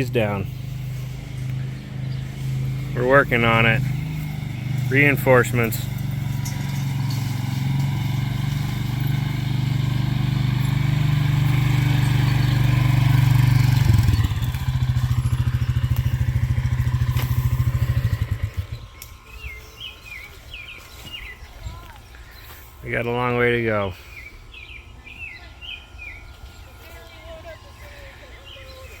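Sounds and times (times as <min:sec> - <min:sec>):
small engine running: 0:00.0 - 0:19.9
bird chirps: 0:00.0 - 0:29.0.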